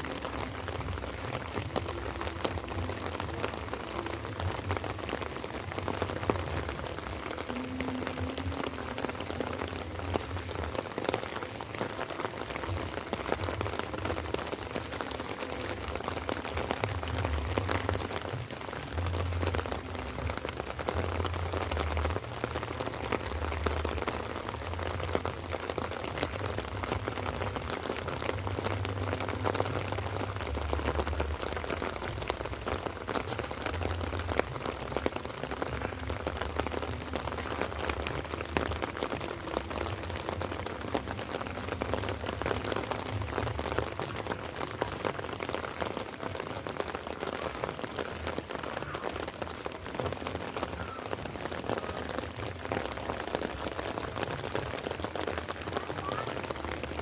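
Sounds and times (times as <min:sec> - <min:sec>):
light rain ticking: 0:00.0 - 0:57.0.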